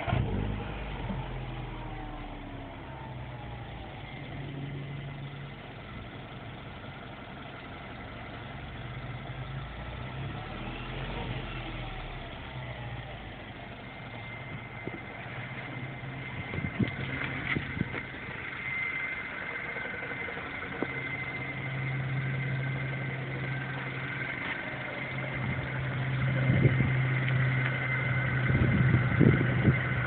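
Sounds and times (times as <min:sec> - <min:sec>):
car engine idling: 0:00.0 - 0:30.0
high-pitched whine: 0:10.5 - 0:30.0.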